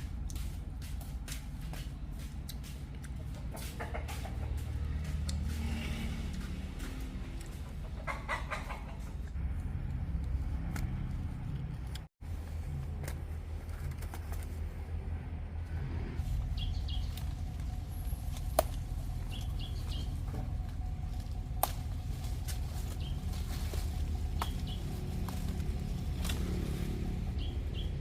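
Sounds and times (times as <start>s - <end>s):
low rumble: 9.2s - 28.0s
high bird chirps: 19.2s - 20.3s.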